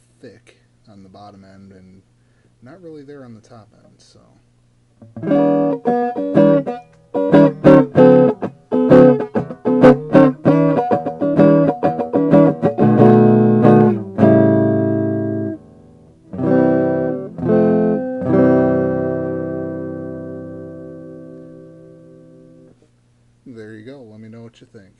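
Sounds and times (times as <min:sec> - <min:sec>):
electric guitar strummed chords: 0:05.0 - 0:22.8.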